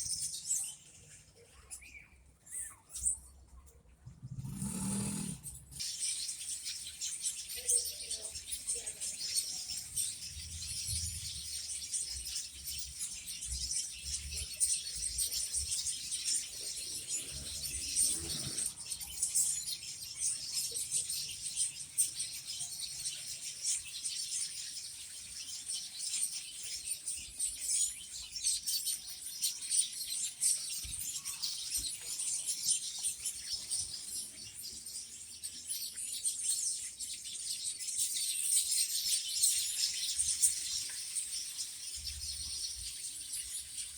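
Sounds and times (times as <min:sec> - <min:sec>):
small birds chirping: 0:00.0 - 0:43.9.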